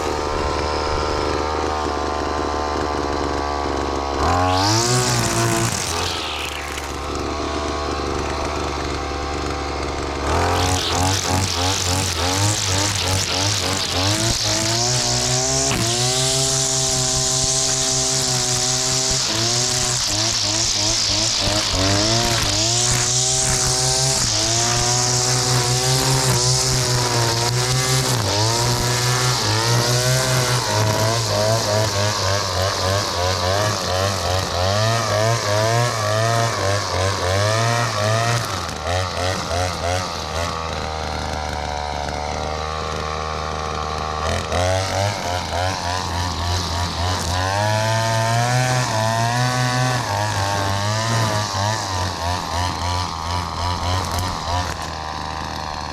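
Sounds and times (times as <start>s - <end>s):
string trimmer engine revving: 0.0s - 55.9s.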